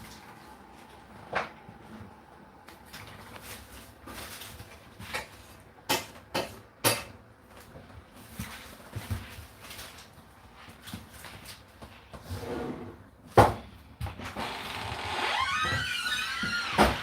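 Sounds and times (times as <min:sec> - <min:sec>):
kitchen knocks and clinks: 0:05.9 - 0:07.2.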